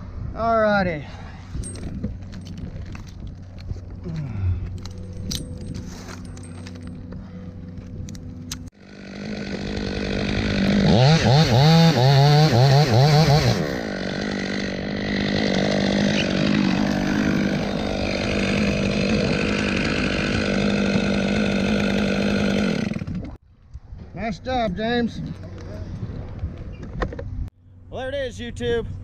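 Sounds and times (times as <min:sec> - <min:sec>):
chainsaw revving and running: 0:08.8 - 0:23.4.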